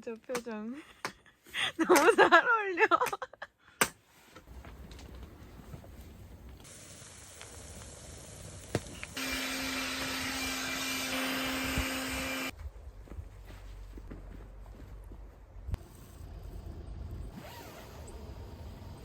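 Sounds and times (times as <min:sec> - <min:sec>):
small electric motor running: 0:06.7 - 0:12.5.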